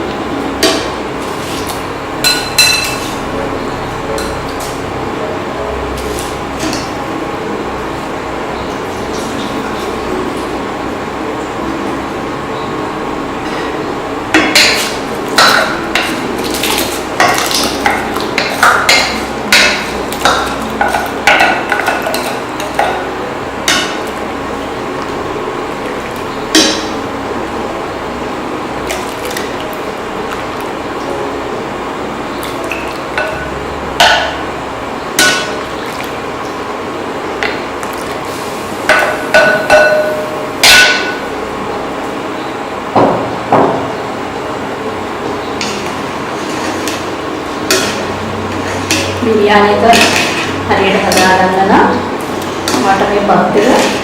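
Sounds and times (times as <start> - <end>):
boiling water hiss: 3.0 - 40.9.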